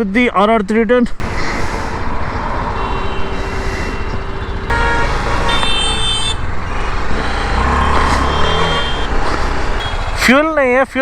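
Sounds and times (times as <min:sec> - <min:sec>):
vehicle horn honking: 0:01.2 - 0:10.4
motorcycle engine and road noise: 0:01.2 - 0:11.0.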